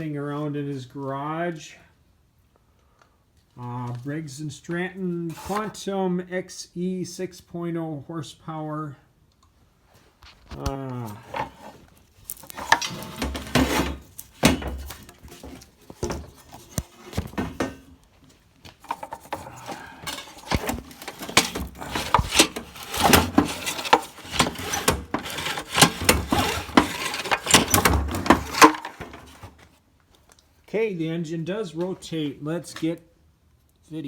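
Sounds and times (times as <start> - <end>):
recoil starter pulls: 18.8 - 29.6.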